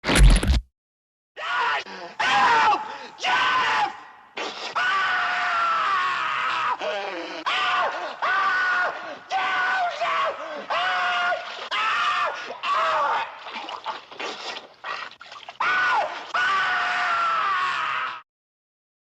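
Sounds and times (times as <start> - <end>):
cartoon high-pitched screams: 15.6 - 18.2.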